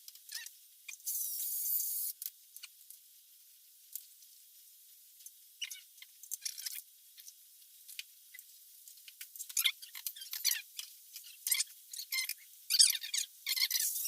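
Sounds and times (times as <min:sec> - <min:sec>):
valve lapping scratching and squeaking: 0:05.6 - 0:07.3, 0:09.2 - 0:14.0.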